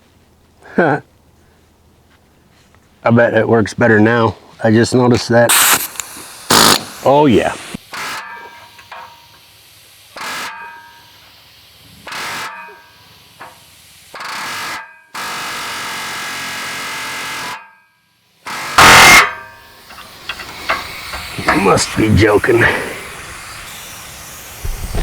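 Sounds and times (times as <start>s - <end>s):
pneumatic air hammer buzzing: 5.5s - 17.7s, 18.4s - 25.0s.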